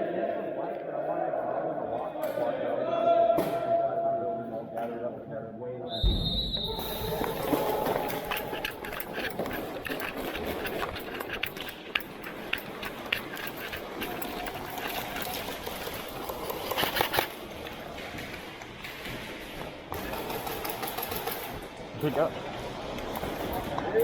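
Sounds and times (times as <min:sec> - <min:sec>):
airsoft guns firing: 0:19.9 - 0:21.7.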